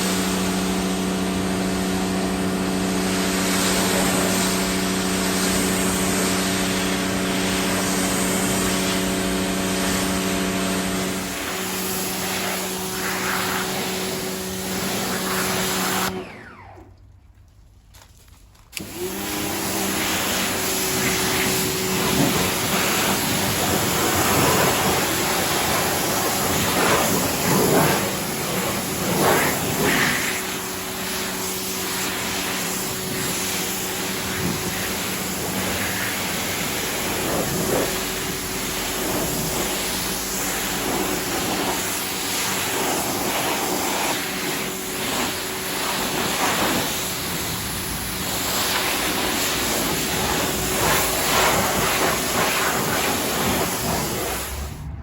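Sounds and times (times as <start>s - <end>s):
pressure washer motor humming: 0.0s - 17.0s, 18.7s - 55.0s
water jet hissing: 9.8s - 16.1s, 18.9s - 54.8s.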